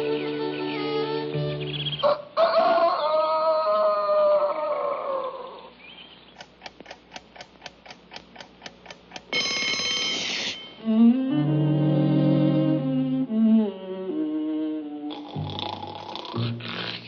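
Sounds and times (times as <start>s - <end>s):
clock ticking: 6.4s - 10.5s
alarm clock bell ringing: 9.3s - 10.8s.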